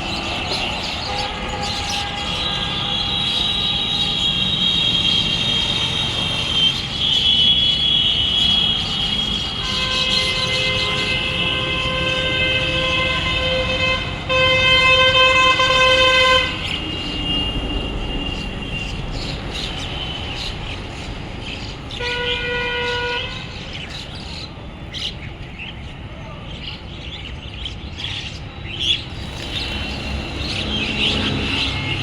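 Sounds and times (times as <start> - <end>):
vehicle horn blast: 0.6 - 18.8, 21.9 - 23.6.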